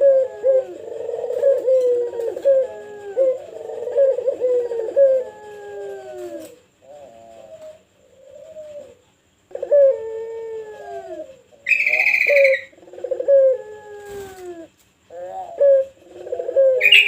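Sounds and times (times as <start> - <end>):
dove cooing: 0.0 - 17.0
shrill high-pitched bird call: 11.7 - 12.7, 16.8 - 17.0.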